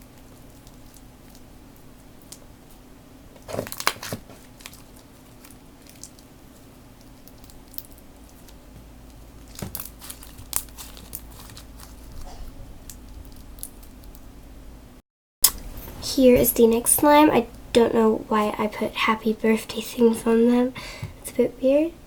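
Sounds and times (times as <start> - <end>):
slime crackling and popping: 3.4 - 14.2.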